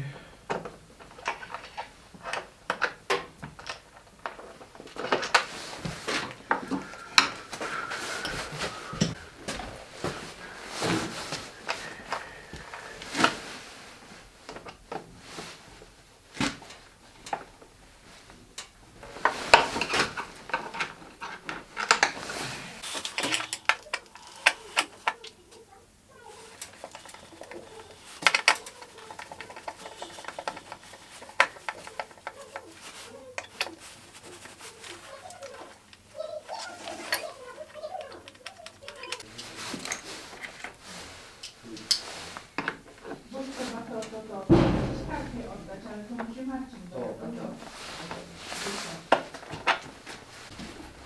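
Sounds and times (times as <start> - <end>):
small hard objects clattering: 26.3 - 35.9.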